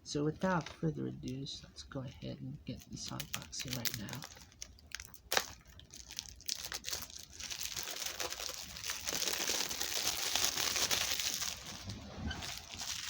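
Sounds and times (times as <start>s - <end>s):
plastic shrink-wrap crinkling: 2.7s - 13.0s.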